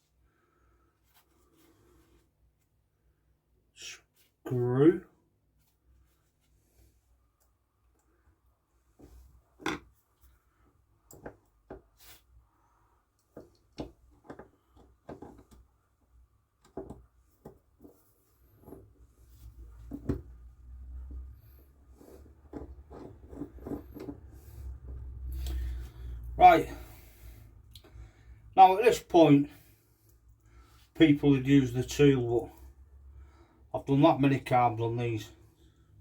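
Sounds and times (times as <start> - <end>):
low rubbing rumble of handling: 17.9 - 26.8.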